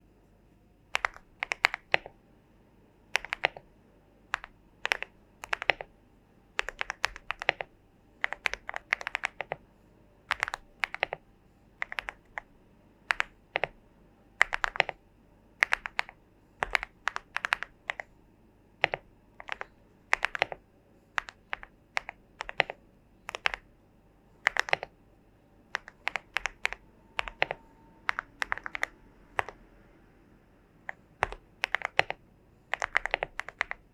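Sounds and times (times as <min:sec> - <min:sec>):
mechanical keyboard typing: 0:00.9 - 0:02.2, 0:03.1 - 0:03.7, 0:04.3 - 0:05.9, 0:06.6 - 0:09.6, 0:10.3 - 0:11.2, 0:11.8 - 0:12.5, 0:13.1 - 0:13.8, 0:14.4 - 0:15.0, 0:15.6 - 0:18.1, 0:18.8 - 0:20.6, 0:21.2 - 0:23.7, 0:24.4 - 0:24.9, 0:25.7 - 0:29.6, 0:30.8 - 0:33.9.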